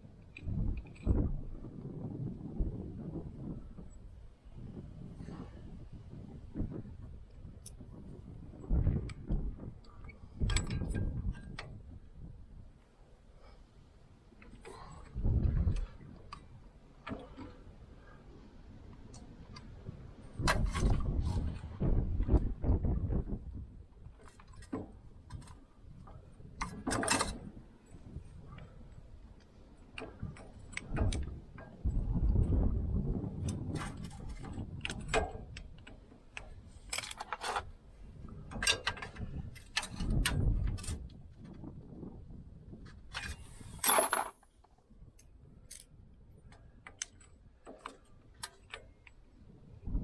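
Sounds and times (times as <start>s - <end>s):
metallic clicks of tools: 26.6s - 27.4s, 36.9s - 37.6s, 43.2s - 44.5s
metallic clatter: 43.2s - 44.5s
metal tools clinking: 43.4s - 44.4s.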